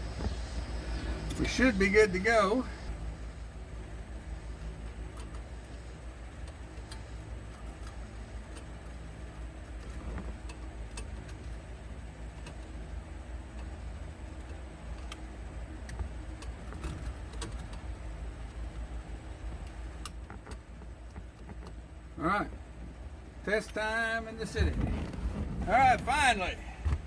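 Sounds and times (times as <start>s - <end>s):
steady low hum: 0.0s - 27.0s
light clicks and taps: 19.5s - 21.9s.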